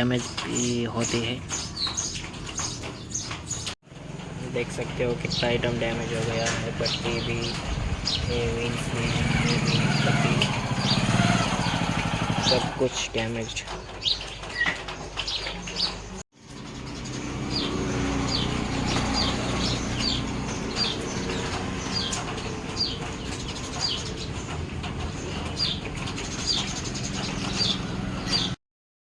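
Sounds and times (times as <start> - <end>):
birds chirping: 0.0 - 28.6
motorcycle engine running: 3.9 - 12.9.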